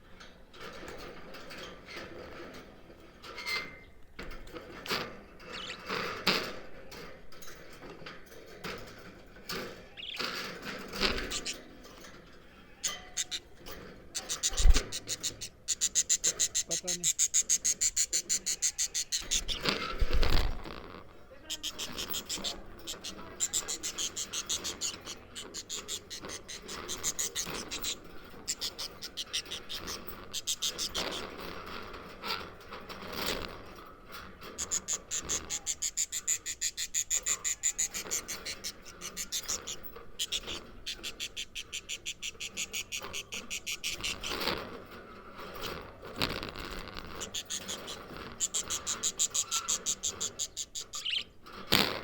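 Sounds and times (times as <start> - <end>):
budgerigars chattering: 9.9 - 11.6, 12.8 - 13.5, 14.2 - 19.8, 21.4 - 31.4, 34.6 - 44.5, 47.1 - 51.3.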